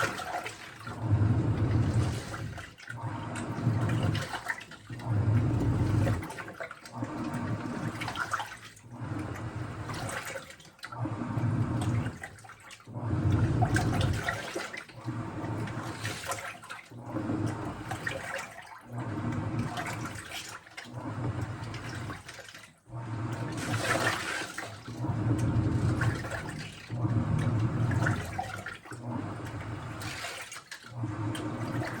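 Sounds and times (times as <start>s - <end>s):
water and laundry sloshing: 0.0s - 32.0s
low motor hum: 1.0s - 2.3s, 5.0s - 6.2s, 12.9s - 14.3s, 24.9s - 28.3s.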